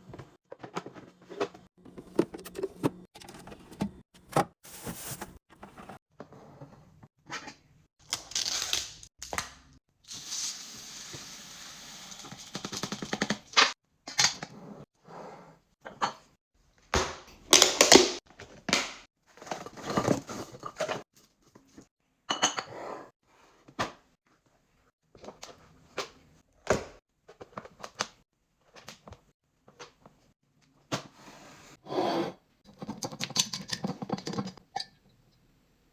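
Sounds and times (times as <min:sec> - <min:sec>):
containers clinking and clicking: 0:32.7 - 0:35.0.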